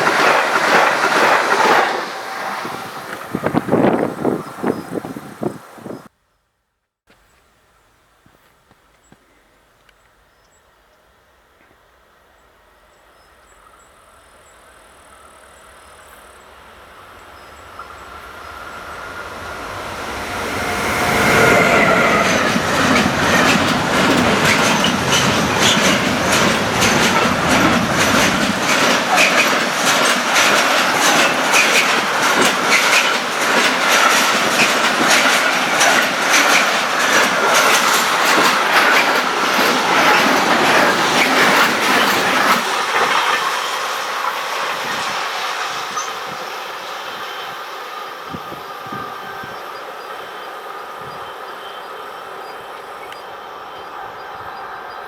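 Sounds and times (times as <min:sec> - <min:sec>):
electric train passing: 0:00.0 - 0:05.8, 0:10.8 - 0:55.0
locomotive whining tone: 0:14.8 - 0:43.4
wheel clatter over rail joints: 0:22.2 - 0:43.6.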